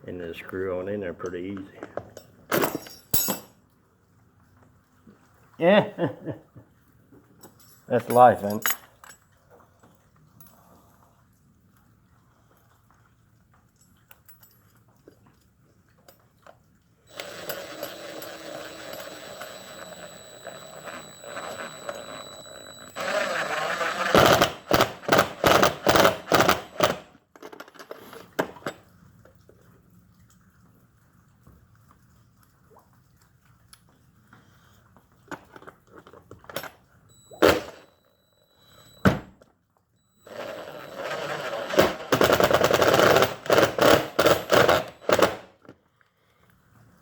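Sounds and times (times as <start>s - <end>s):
cordless drill driving screws: 17.1s - 27.0s, 40.2s - 45.4s.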